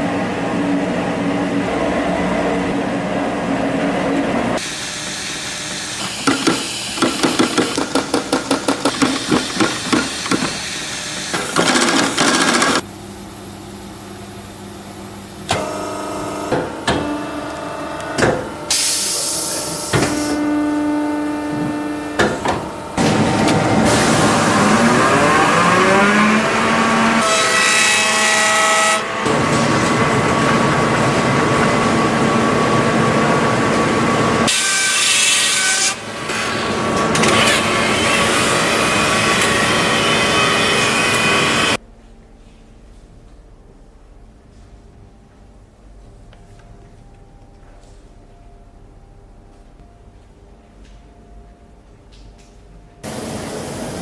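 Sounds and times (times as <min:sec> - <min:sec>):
machine motor whining: 0:15.5 - 0:27.8.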